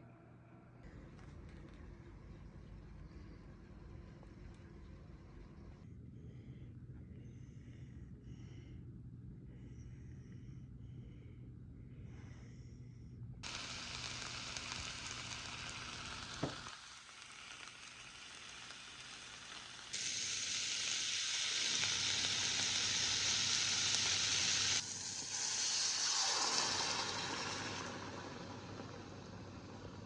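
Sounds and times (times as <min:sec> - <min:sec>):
food sizzling in a pan: 0:13.4 - 0:30.0.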